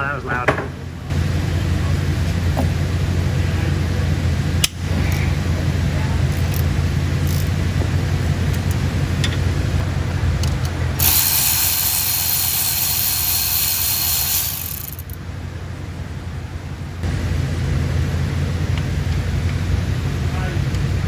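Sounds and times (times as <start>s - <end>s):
low mechanical hum: 0.0s - 21.0s
compressed air hiss: 4.7s - 15.2s.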